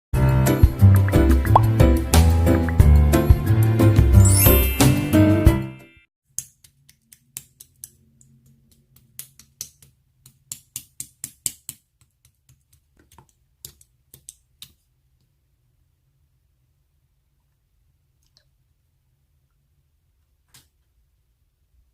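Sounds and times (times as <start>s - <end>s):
music: 0.2s - 6.1s.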